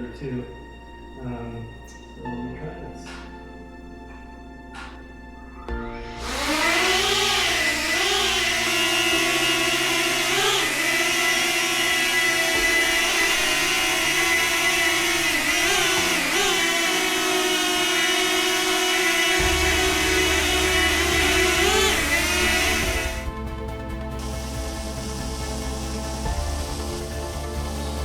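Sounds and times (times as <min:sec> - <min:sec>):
quadcopter propellers buzzing: 0:06.1 - 0:28.0.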